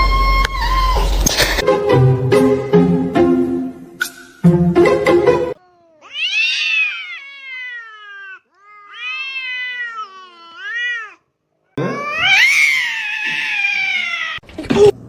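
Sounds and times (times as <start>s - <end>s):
cat meowing: 5.6s - 11.2s, 11.8s - 14.4s.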